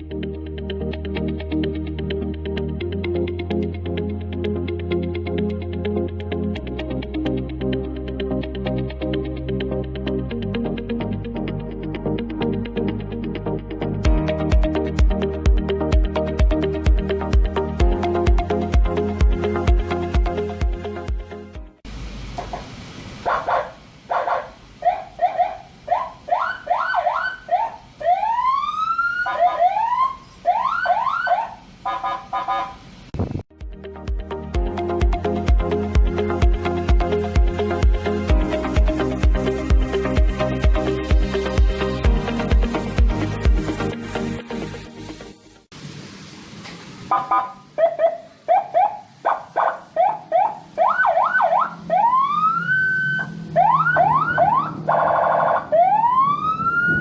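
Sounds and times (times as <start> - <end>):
electronic siren whoops and wail: 24.8 - 32.7, 47.1 - 57.0.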